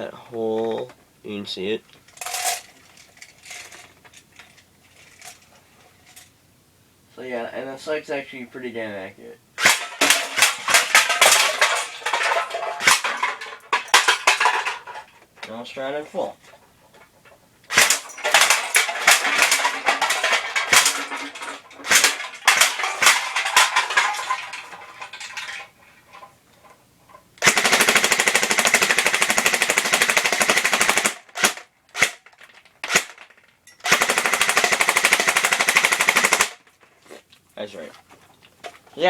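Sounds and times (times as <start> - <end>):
airsoft gun firing bursts: 17.7 - 21.0, 21.8 - 23.7, 27.4 - 32.2, 32.8 - 33.2, 33.8 - 36.6.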